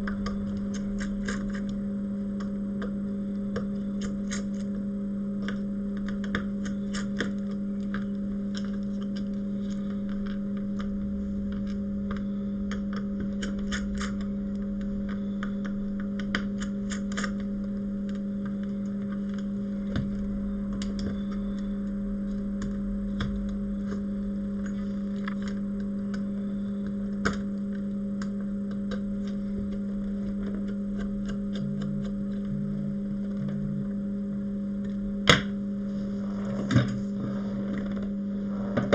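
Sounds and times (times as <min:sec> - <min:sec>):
low electrical hum: 0:00.0 - 0:38.9.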